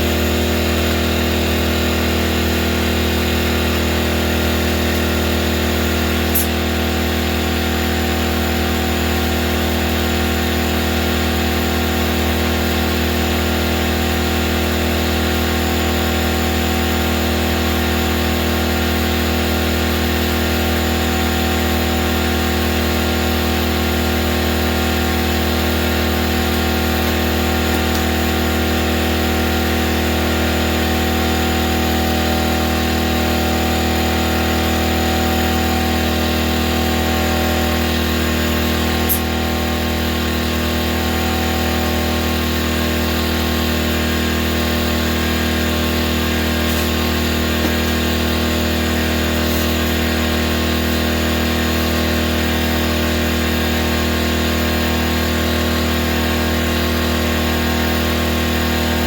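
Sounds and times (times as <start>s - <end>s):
air compressor humming: 0.0s - 59.0s
short click: 6.3s - 6.6s.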